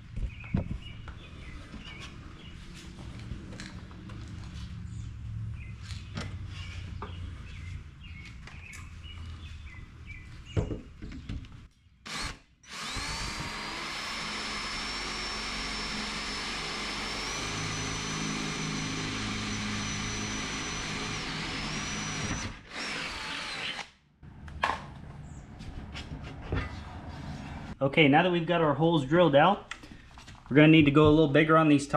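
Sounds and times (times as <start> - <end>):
power drill whining through metal: 12.1 - 23.9.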